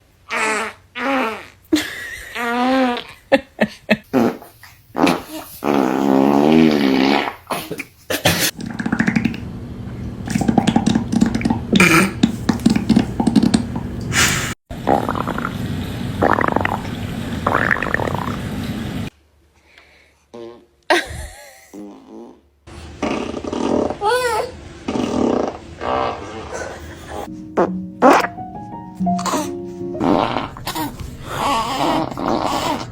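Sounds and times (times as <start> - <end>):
fart sounds: 4.1 - 9.4, 10.2 - 18.5, 21.7 - 24.0, 24.9 - 28.4, 29.2 - 32.9.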